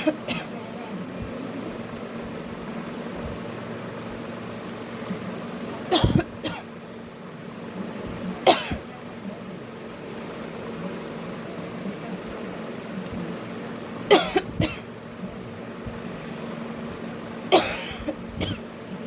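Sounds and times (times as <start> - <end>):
woman coughing: 0.0 - 0.6, 5.9 - 6.7, 8.4 - 8.9, 14.1 - 14.9, 17.5 - 18.7
steady background hum: 0.0 - 19.0.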